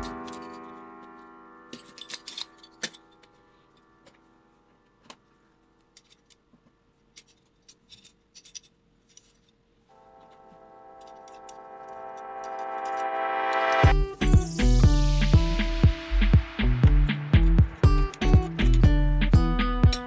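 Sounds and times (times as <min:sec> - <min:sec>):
background music: 0:00.0 - 0:04.6, 0:09.9 - 0:20.0.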